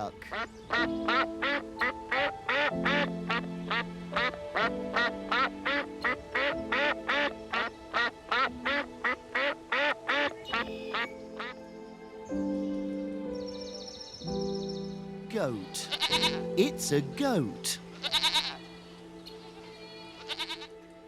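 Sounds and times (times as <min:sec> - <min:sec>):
duck quacking: 0:00.0 - 0:11.5, 0:15.8 - 0:17.0, 0:17.9 - 0:18.6.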